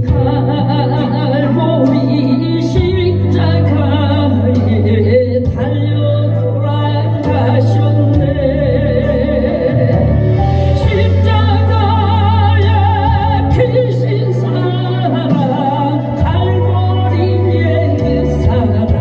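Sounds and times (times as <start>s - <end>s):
steady bass accompaniment: 0.0s - 19.0s.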